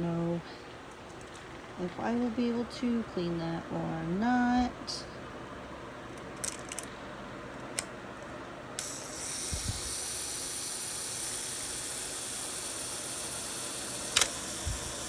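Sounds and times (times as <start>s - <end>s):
steady hiss: 8.8s - 15.0s.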